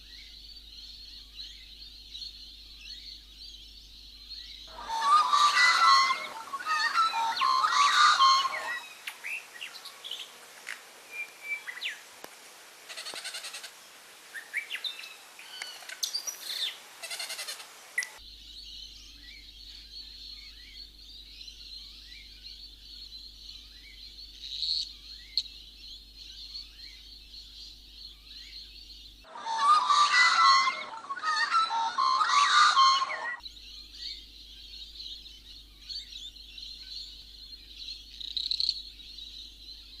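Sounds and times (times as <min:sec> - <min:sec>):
birds chirping and calling: 0:00.0 - 0:12.0, 0:14.4 - 0:40.0.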